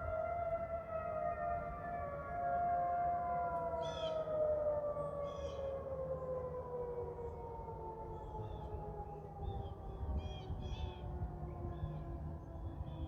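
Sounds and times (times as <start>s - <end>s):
tornado sirens wailing: 0.0s - 13.0s.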